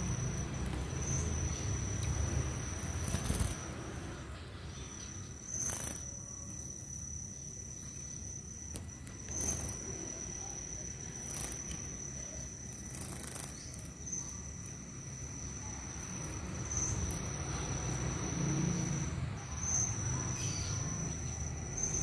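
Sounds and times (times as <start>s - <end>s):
insect chirring: 0.0s - 22.0s.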